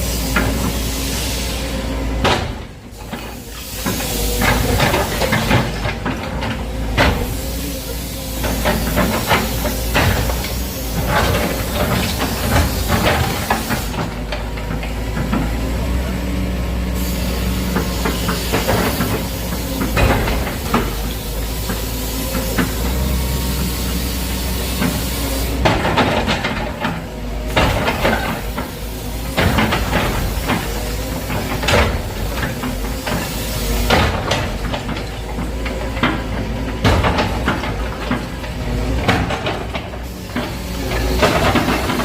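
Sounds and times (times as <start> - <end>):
excavator diesel engine: 0.0 - 42.0.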